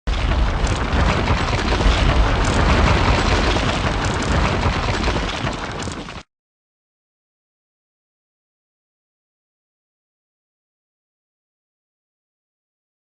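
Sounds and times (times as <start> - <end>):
wall crashing and crumbling: 0.1 - 6.3.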